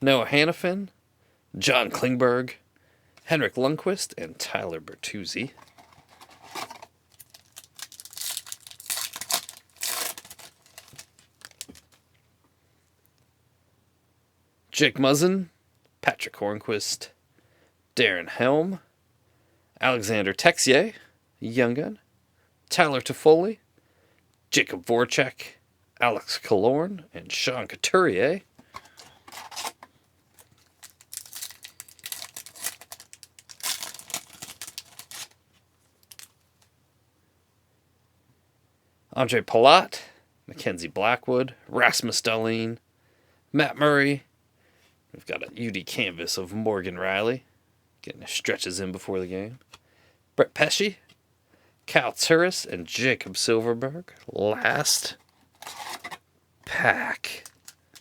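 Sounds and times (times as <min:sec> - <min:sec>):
plastic wrapper tearing and crinkling: 0:05.6 - 0:12.0, 0:28.8 - 0:35.4, 0:36.0 - 0:36.7, 0:55.6 - 0:56.2, 0:57.4 - 0:58.0.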